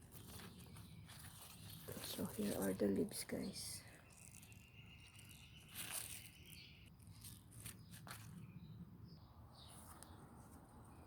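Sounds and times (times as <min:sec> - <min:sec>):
rustling of leaves being handled: 0:00.0 - 0:08.5.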